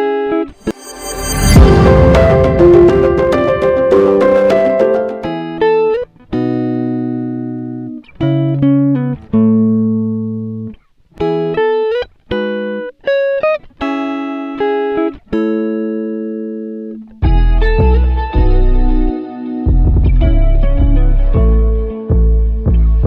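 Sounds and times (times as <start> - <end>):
plucked guitar chords: 1.1 - 10.6.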